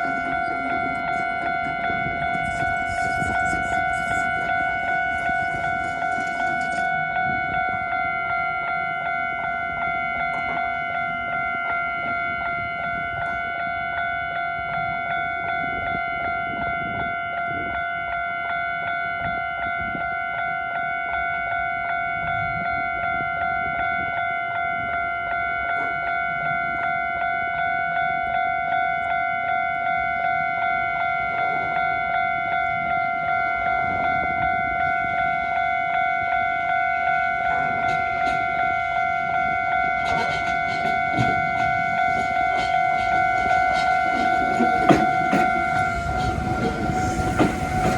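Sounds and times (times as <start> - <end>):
train wheel clicks: 0.0 - 7.9, 36.3 - 47.9
train rumble: 0.0 - 18.3, 29.0 - 47.9
level-crossing warning bell: 0.0 - 47.9.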